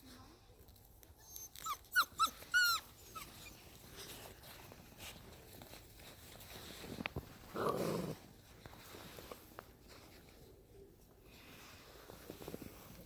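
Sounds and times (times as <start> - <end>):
rustling: 0.1 - 13.0
puppies whining: 1.2 - 3.9.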